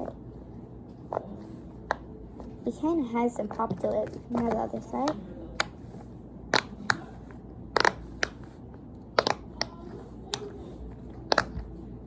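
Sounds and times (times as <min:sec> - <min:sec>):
pop-it toy bubbles popping: 0:09.2 - 0:09.6.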